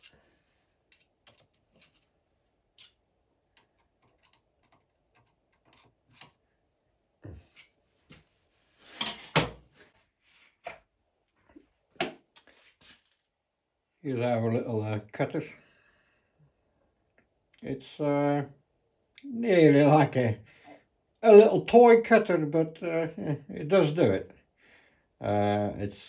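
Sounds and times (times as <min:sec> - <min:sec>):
metal tooling clicks and knocks: 0:00.9 - 0:02.0.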